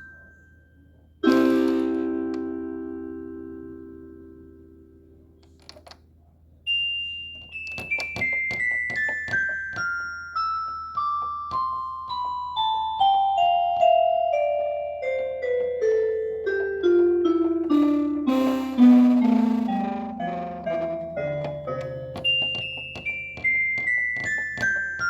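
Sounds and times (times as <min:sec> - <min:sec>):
descending keyboard notes: 0:01.2 - 0:05.4, 0:11.0 - 0:25.0
electronic keyboard chord: 0:01.2 - 0:05.4, 0:10.4 - 0:25.0.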